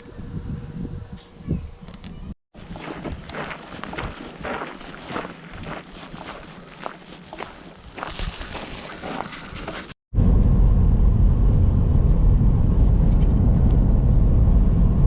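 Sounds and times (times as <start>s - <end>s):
faint footsteps: 2.6s - 10.0s
loud low rumble: 10.1s - 15.0s.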